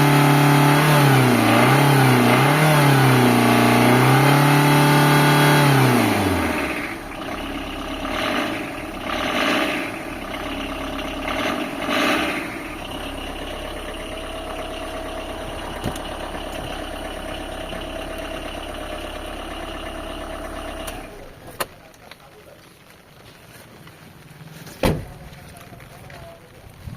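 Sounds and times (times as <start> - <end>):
thin engine whine: 0.0 - 21.5
car engine idling: 0.0 - 26.8.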